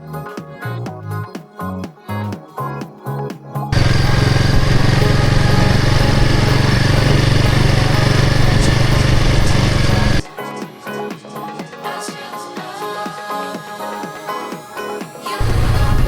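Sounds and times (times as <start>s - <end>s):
background music: 0.0s - 16.0s
motorcycle engine running: 3.8s - 10.2s, 15.4s - 16.0s.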